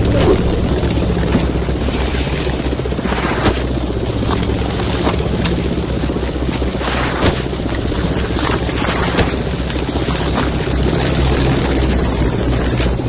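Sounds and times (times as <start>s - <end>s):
engine drone: 0.0s - 13.0s
rapid gunfire: 3.0s - 11.6s.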